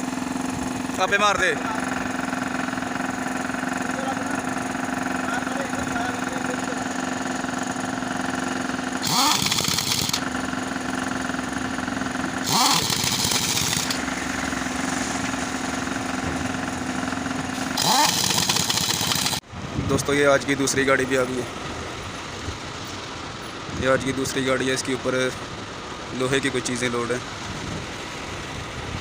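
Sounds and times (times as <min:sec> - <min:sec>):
engine idling: 0:00.0 - 0:29.0
rising whir and hiss: 0:09.0 - 0:10.3, 0:12.4 - 0:15.6, 0:17.5 - 0:19.4.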